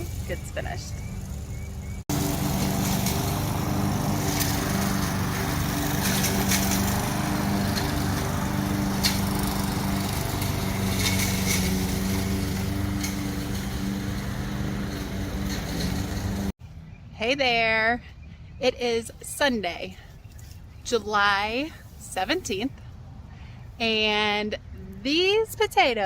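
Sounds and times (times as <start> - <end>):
lawn mower running: 0.0 - 16.6.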